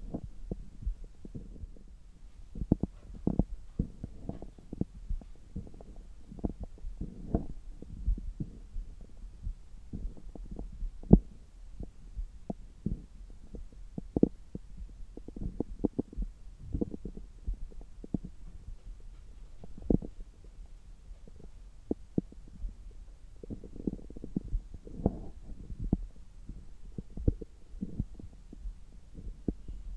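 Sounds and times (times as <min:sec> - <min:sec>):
stomach pops and gurgles: 0:00.0 - 0:29.9.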